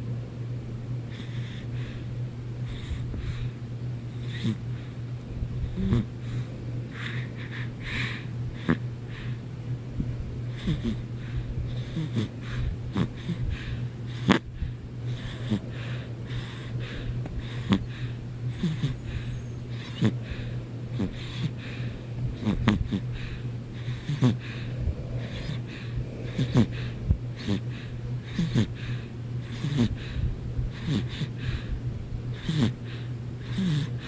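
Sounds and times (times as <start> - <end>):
snorts: 1.1 - 2.0, 2.7 - 4.8, 5.6 - 9.4, 10.5 - 31.7, 32.3 - 34.0
person snoring: 4.2 - 4.6, 5.7 - 6.1, 10.5 - 11.1, 11.8 - 13.5, 15.1 - 23.2, 23.8 - 30.0, 30.7 - 31.4, 32.4 - 34.0.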